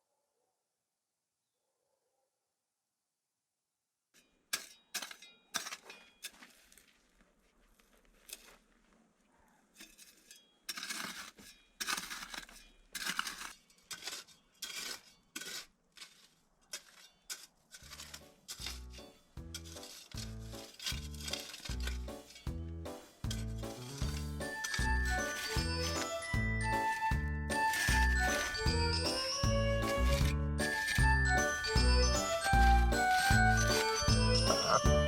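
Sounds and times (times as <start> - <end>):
hard objects clinking and knocking: 16.8 - 35.0.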